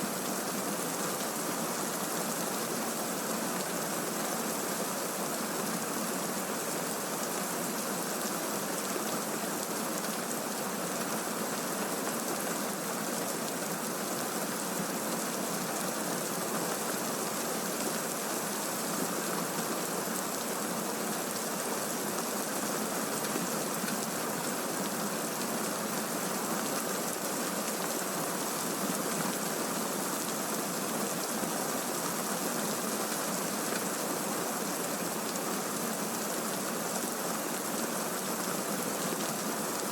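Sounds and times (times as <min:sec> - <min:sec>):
steady rainfall hiss: 0:00.0 - 0:39.9.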